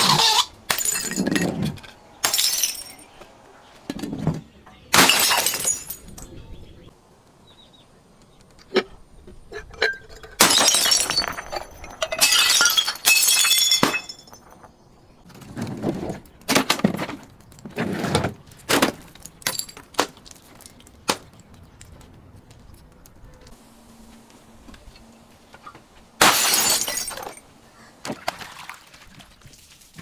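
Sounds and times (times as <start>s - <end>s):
glass bottles shattering: 0.3s - 3.2s, 4.9s - 6.3s, 9.8s - 14.6s, 18.8s - 19.9s, 26.2s - 27.4s.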